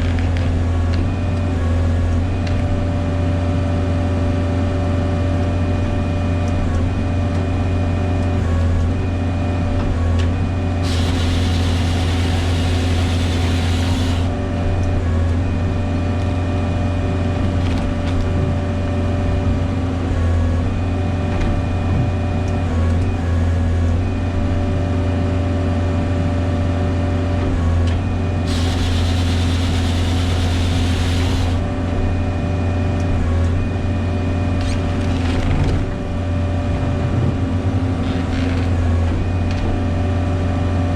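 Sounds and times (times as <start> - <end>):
engine running steadily: 0.0 - 40.9
loud hissing rush: 10.8 - 14.3.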